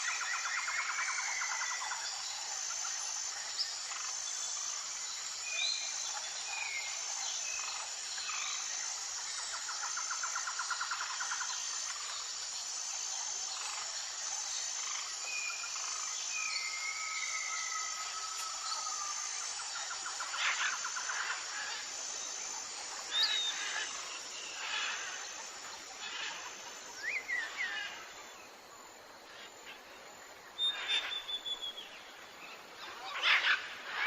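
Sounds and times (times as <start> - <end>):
insect chorus: 0.0 - 34.0
bird chirps and whistles: 31.0 - 31.8.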